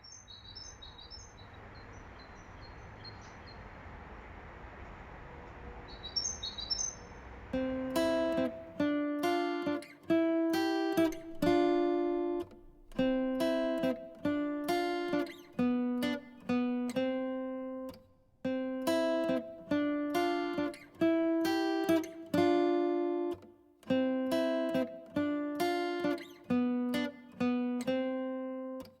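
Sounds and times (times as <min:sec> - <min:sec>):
acoustic guitar melody: 0:07.5 - 0:29.0.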